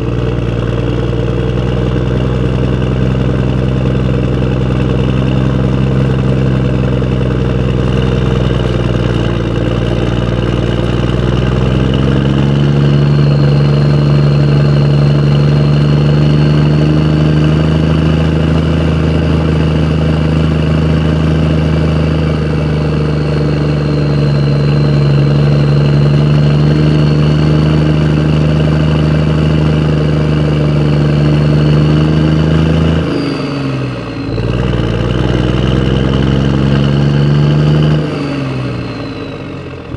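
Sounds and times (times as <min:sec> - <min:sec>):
vehicle engine running: 0:00.0 - 0:39.9
thin high whine: 0:07.0 - 0:20.2.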